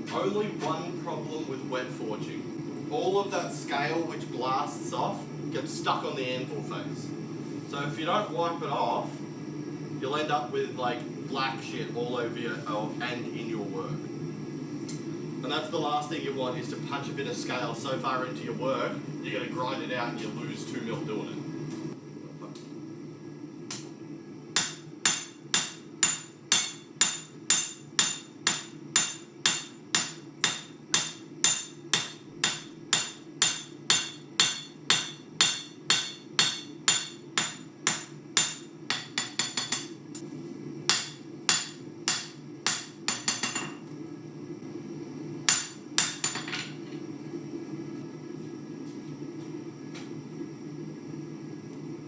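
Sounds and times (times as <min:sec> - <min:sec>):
steady low hum: 0:00.0 - 0:52.0
hammer striking blade on anvil: 0:24.6 - 0:40.0, 0:40.9 - 0:43.8, 0:45.5 - 0:46.6.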